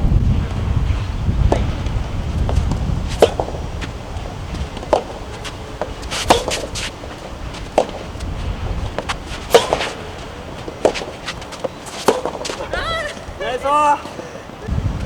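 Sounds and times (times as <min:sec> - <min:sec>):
wind rumble on microphone: 0:00.0 - 0:11.5, 0:14.6 - 0:15.0
rackets hitting tennis ball: 0:01.4 - 0:14.3.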